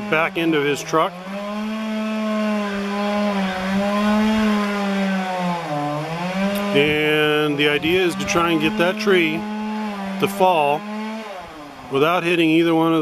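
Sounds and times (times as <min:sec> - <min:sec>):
chainsaw cutting wood: 0:00.0 - 0:13.0.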